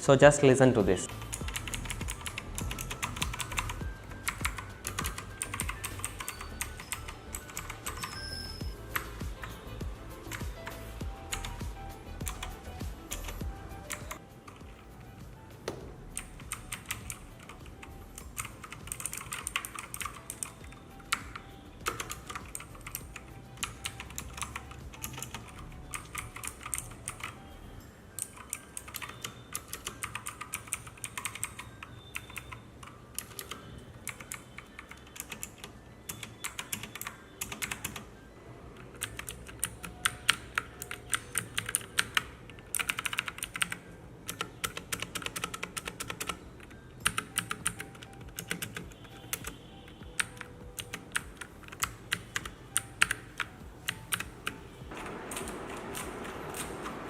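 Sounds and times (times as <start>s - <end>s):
mechanical keyboard typing clicks: 16.2s - 27.4s, 28.2s - 38.1s, 38.8s - 57.0s.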